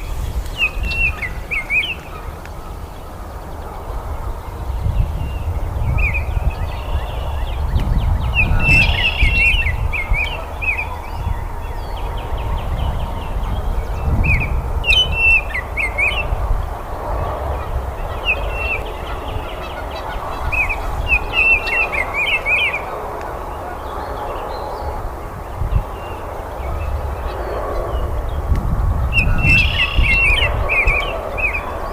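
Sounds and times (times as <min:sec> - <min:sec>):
bird singing whistled notes: 0:05.2 - 0:11.9, 0:29.2 - 0:31.7.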